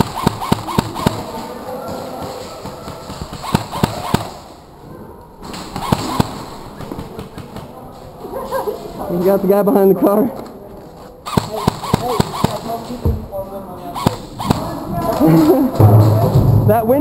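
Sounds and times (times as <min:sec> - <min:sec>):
airsoft gun shots: 0:00.0 - 0:04.6, 0:05.4 - 0:07.7, 0:11.2 - 0:13.1, 0:14.0 - 0:16.7.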